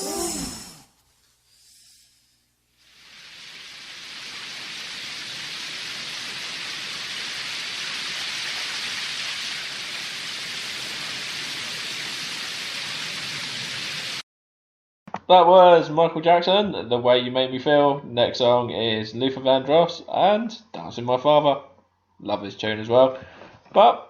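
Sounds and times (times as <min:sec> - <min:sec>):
rain-like hiss: 0:01.5 - 0:14.2.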